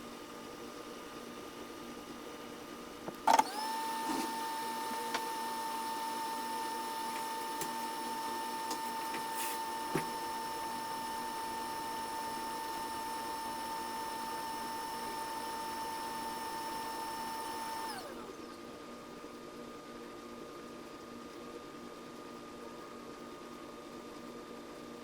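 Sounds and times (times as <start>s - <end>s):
small electric motor whining: 3.2s - 18.3s.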